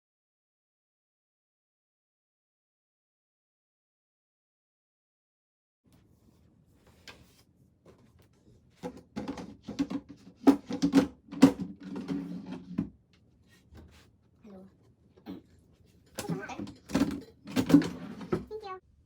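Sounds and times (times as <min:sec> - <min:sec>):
wooden furniture parts knocking: 0:08.8 - 0:12.9.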